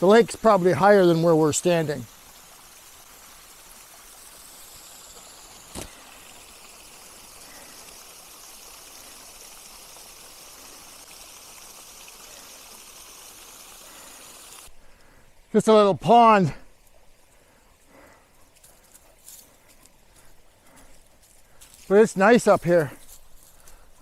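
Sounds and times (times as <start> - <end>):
small waterfall splashing: 0.0 - 14.7.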